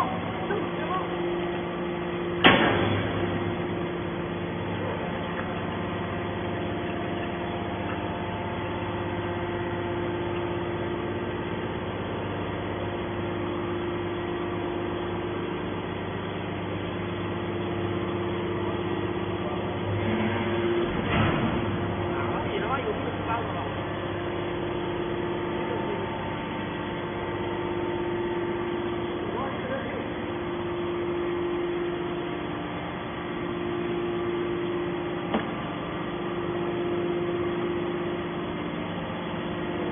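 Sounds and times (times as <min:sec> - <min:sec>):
scrap metal baler humming: 0:00.0 - 0:39.9
sharp bang: 0:02.4 - 0:03.3.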